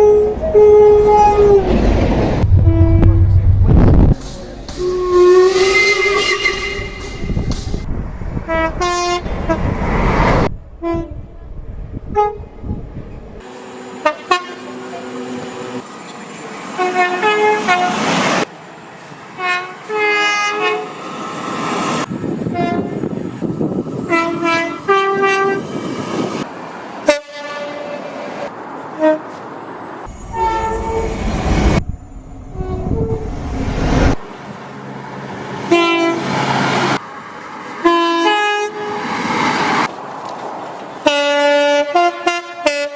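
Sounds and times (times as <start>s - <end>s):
train horn blasts: 0.0s - 1.6s, 2.4s - 3.4s, 4.2s - 7.9s, 8.5s - 9.7s, 10.8s - 11.3s, 12.1s - 12.6s, 13.5s - 15.8s, 16.8s - 18.1s, 19.4s - 21.0s, 22.5s - 23.0s, 24.1s - 25.6s, 27.0s - 28.2s, 28.9s - 29.4s, 30.1s - 31.8s, 32.5s - 33.3s, 35.7s - 36.4s, 37.8s - 39.1s, 41.0s - 42.9s
train rumbling: 0.0s - 27.2s, 28.0s - 42.1s.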